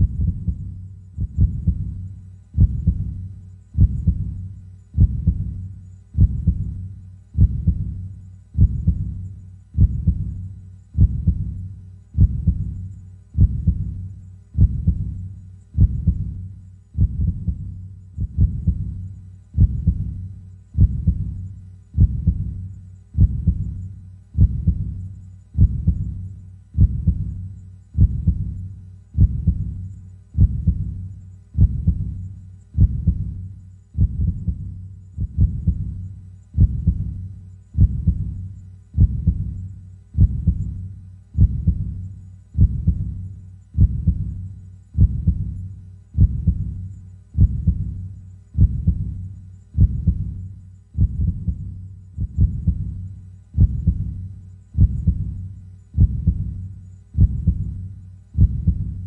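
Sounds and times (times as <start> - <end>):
slow heartbeat thumps: 0.0 - 59.0.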